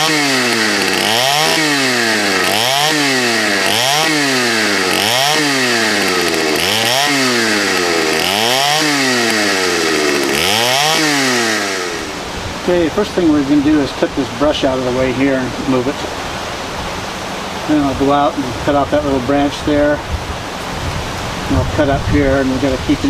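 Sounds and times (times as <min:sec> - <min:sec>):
chainsaw revving: 0:00.0 - 0:15.9.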